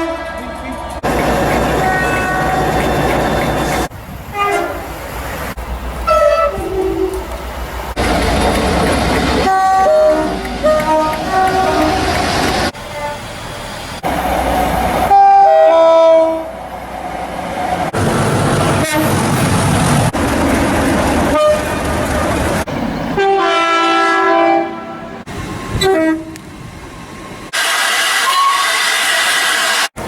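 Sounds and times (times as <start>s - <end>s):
trains rumbling past: 0.0s - 27.6s
locomotive air horns: 1.0s - 4.9s, 6.0s - 7.2s, 9.4s - 13.4s, 15.0s - 16.6s, 18.7s - 19.2s, 23.2s - 26.4s, 27.6s - 29.9s.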